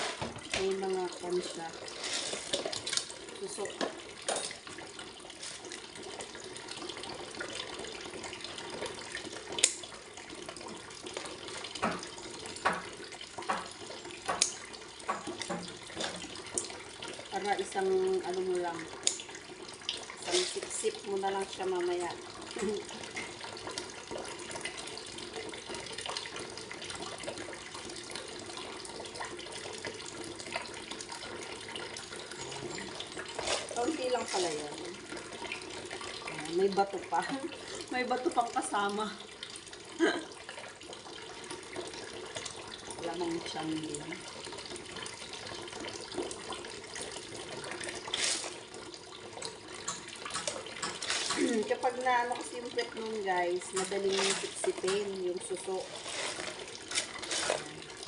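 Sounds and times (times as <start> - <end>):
tap water running into sink: 0.0 - 58.0.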